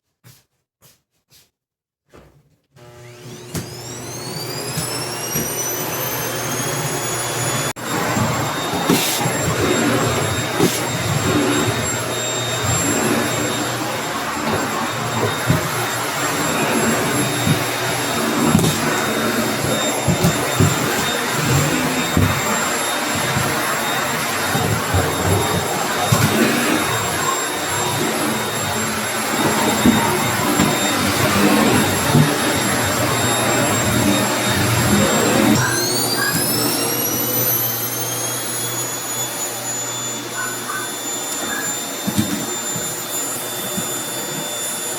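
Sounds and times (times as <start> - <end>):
vacuum cleaner running: 2.8 - 44.9.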